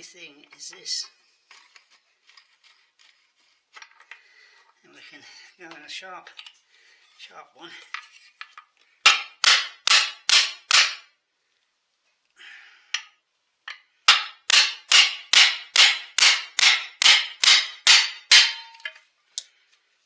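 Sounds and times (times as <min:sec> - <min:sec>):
hammer striking metal: 0:09.1 - 0:11.1, 0:14.1 - 0:19.0.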